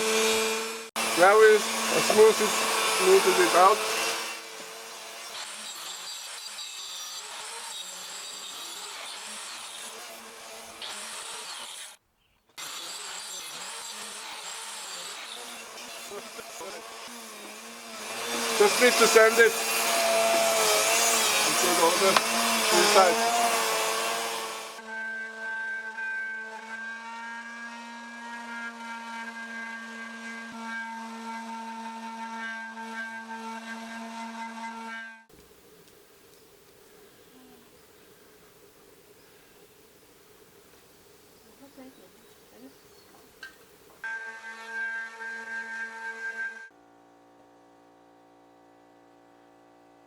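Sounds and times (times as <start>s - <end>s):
sanding wood: 0.0s - 12.0s, 12.6s - 35.0s.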